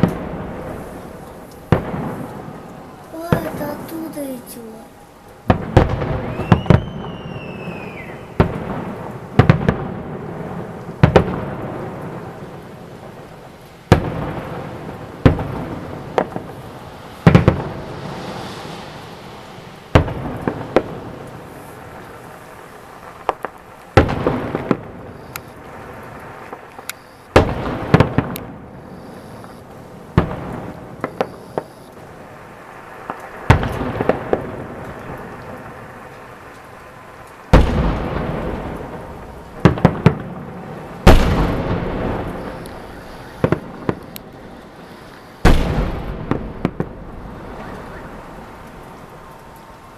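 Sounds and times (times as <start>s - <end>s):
firework shells booming: 0.0s - 4.5s, 5.4s - 13.3s, 13.9s - 22.4s, 23.0s - 36.1s, 37.4s - 49.2s
rolling rumble: 27.5s - 49.9s.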